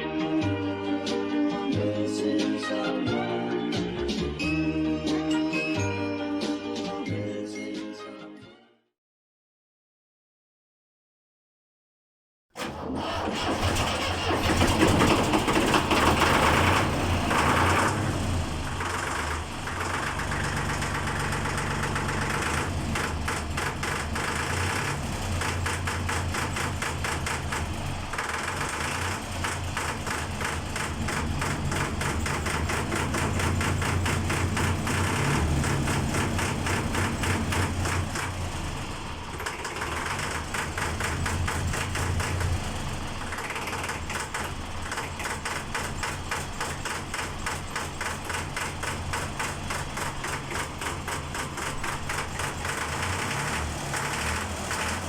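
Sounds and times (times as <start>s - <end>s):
diesel tractor engine running: 12.6s - 55.0s
engine intake suction: 12.6s - 55.0s.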